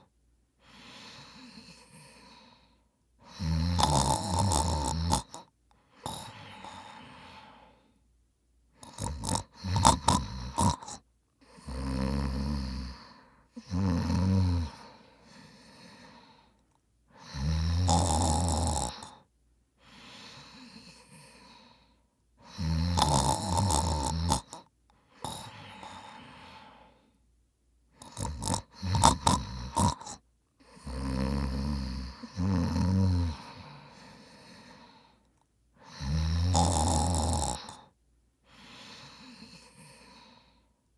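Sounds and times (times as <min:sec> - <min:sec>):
man snoring heavily: 0:03.2 - 0:07.7, 0:08.8 - 0:16.4, 0:17.2 - 0:19.2, 0:22.4 - 0:26.9, 0:28.0 - 0:35.0, 0:35.8 - 0:37.9, 0:38.5 - 0:40.5.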